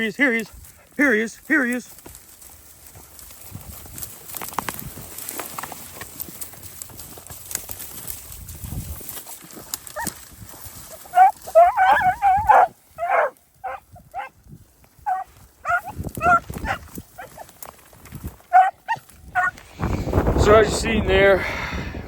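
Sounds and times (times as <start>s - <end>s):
hounds baying and yipping: 9.5s - 14.4s, 15.0s - 17.7s, 18.3s - 19.6s.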